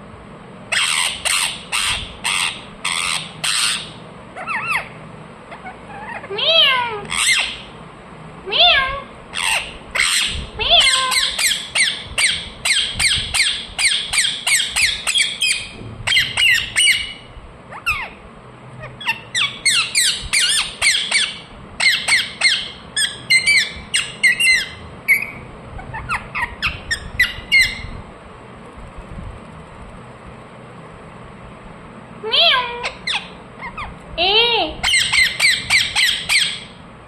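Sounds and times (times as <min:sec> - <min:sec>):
parrot chirping: 0:00.7 - 0:07.8, 0:08.5 - 0:18.2, 0:18.8 - 0:28.0, 0:32.3 - 0:34.0, 0:34.8 - 0:36.8.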